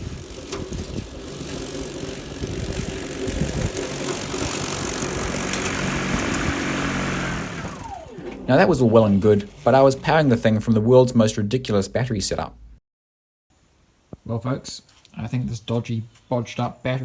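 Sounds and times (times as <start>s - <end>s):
chassis rattle: 0.0s - 10.6s
electric motor hum: 0.0s - 10.6s.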